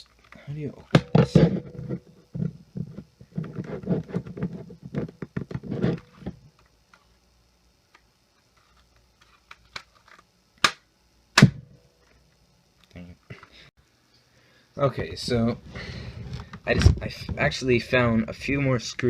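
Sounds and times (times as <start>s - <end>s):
sharp plastic snaps: 9.5s - 11.6s.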